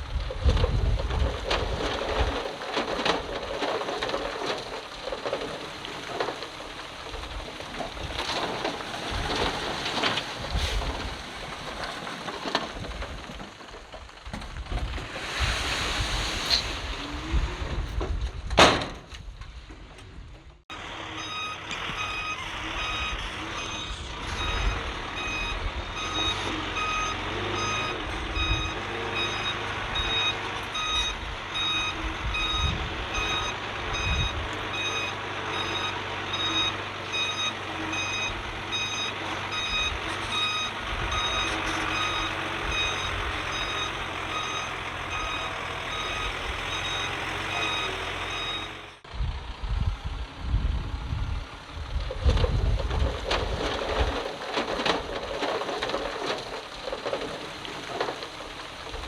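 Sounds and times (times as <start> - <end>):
diesel engine rumble: 0.0 - 59.0
back-up alarm beeping: 20.7 - 49.0
heavy machinery running: 20.7 - 59.0.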